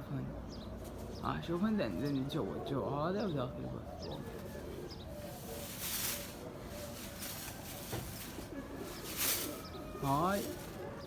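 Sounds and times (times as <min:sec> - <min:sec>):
pigeons cooing: 0:00.3 - 0:11.0.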